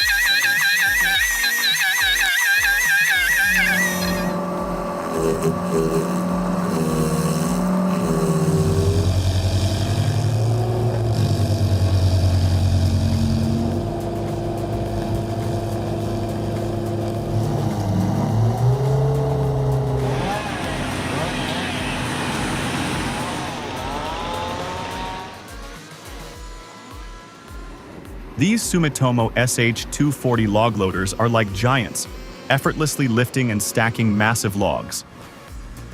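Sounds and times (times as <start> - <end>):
heavy machine engine running: 0.0 - 34.3.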